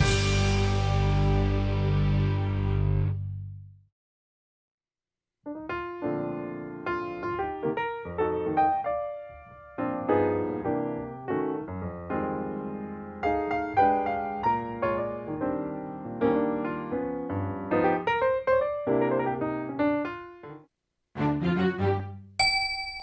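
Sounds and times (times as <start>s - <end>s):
piano music: 0.0s - 3.0s, 5.5s - 20.6s.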